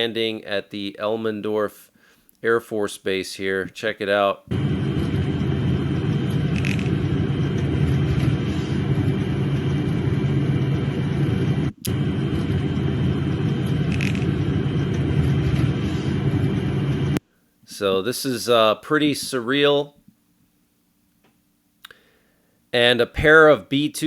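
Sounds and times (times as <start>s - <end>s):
jet engine rumble: 4.5s - 17.2s
turbine whine: 4.5s - 17.2s.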